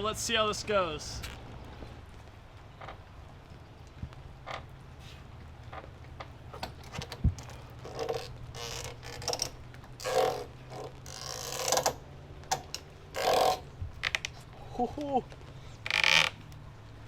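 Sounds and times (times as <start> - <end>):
hanging rings creaking: 5.6 - 16.6.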